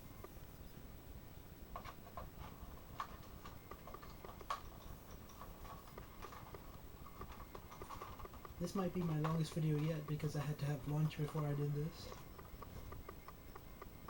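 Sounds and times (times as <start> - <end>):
plastic toy parts clicking: 7.2 - 13.9.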